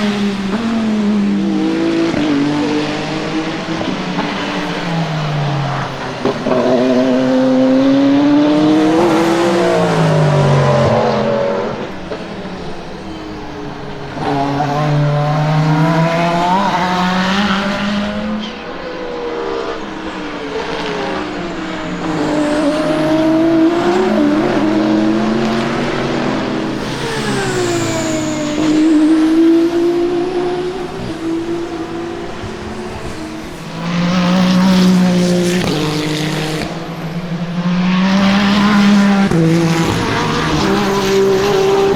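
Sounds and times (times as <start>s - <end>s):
race cars passing at speed: 0.0s - 41.9s.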